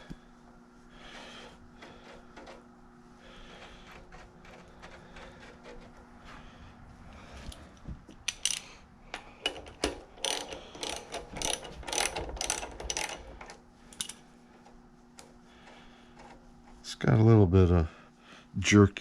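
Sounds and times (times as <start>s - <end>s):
metal thread clicking and scraping: 8.2s - 14.2s.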